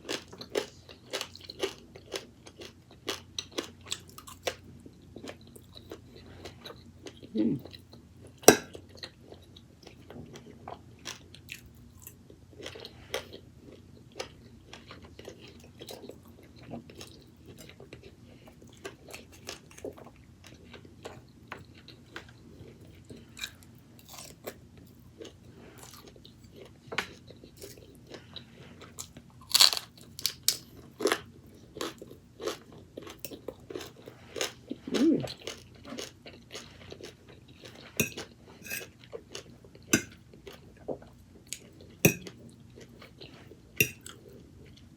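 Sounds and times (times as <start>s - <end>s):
person chewing crunchy food: 0.0s - 44.9s
wet mouth sounds: 34.7s - 35.4s.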